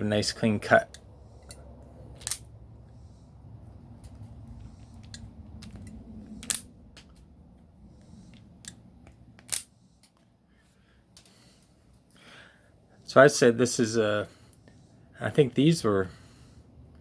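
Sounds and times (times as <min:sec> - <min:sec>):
wire strippers clicking shut: 0:02.2 - 0:02.5, 0:05.0 - 0:07.2.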